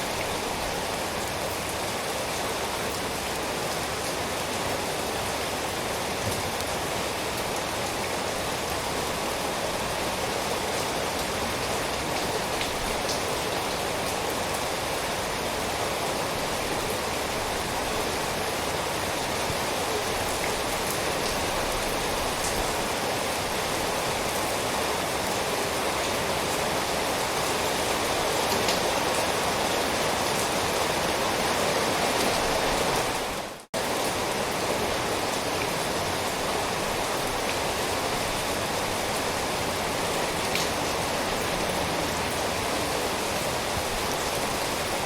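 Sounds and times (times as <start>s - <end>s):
steady rain: 0.0s - 45.0s
faint raindrop ticks: 40.5s - 40.8s.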